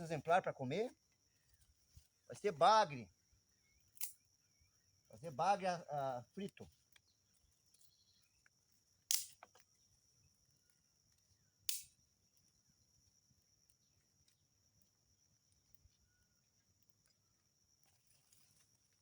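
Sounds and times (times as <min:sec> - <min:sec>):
dry twigs cracking: 0:09.1 - 0:09.6.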